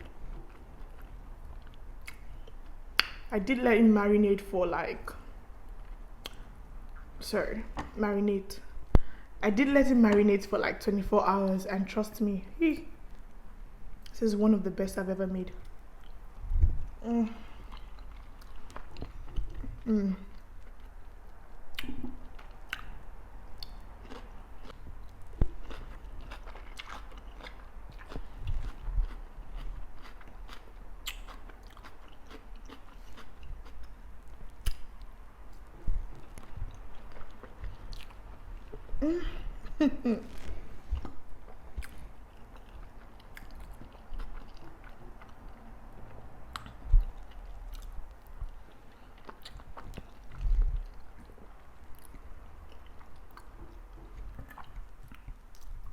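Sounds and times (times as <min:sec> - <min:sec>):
wet mouth clicks and smacks: 0:02.9 - 0:03.3, 0:21.7 - 0:23.0
chewing food: 0:17.6 - 0:38.9, 0:39.7 - 0:55.9.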